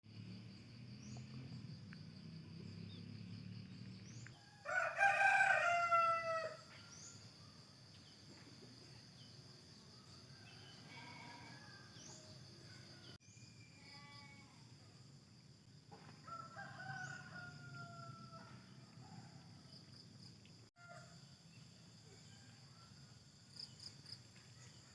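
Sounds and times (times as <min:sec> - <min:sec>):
rooster crowing: 0:04.3 - 0:07.2, 0:10.3 - 0:13.2, 0:16.2 - 0:19.4.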